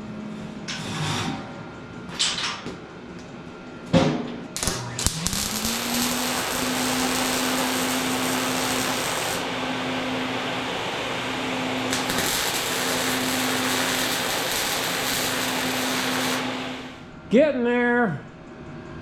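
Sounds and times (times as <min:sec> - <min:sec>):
angle grinder grinding steel: 0:05.0 - 0:09.4, 0:11.9 - 0:16.8.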